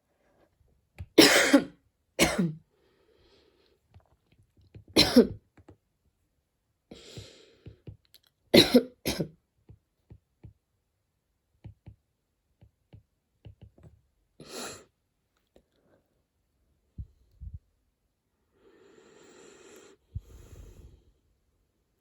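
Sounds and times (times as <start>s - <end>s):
person coughing: 1.2s - 2.6s, 5.0s - 5.4s, 8.6s - 9.3s
breathing: 2.7s - 3.9s, 6.9s - 8.0s, 18.5s - 21.3s.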